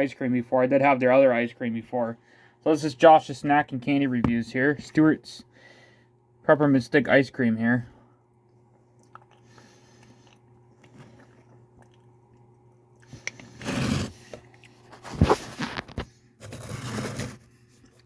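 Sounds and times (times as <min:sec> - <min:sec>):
carton scraping and crinkling: 0:13.5 - 0:18.0.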